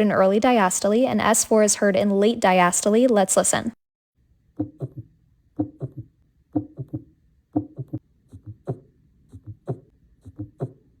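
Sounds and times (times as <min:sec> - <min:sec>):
heartbeat through stethoscope: 0:04.6 - 0:11.0.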